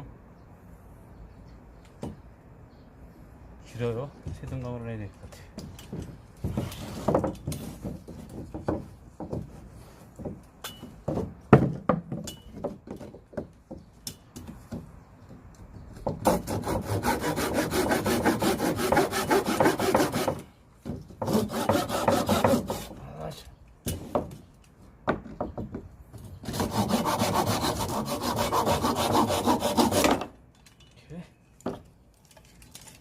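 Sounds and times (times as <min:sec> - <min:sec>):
knocks of wood being handled: 0:04.1 - 0:16.4, 0:18.7 - 0:22.9, 0:23.7 - 0:27.4, 0:28.6 - 0:32.8
saw cutting through log: 0:16.2 - 0:20.4, 0:21.2 - 0:23.0, 0:26.4 - 0:30.2.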